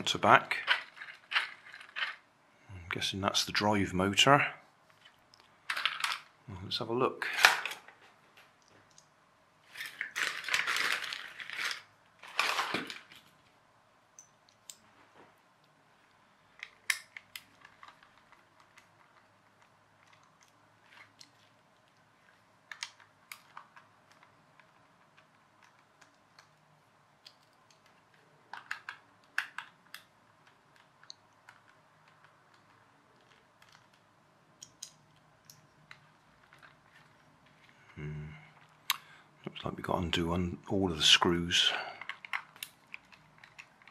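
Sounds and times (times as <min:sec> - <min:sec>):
plastic toy scraping rattles: 0:00.4 - 0:02.2, 0:09.6 - 0:13.3.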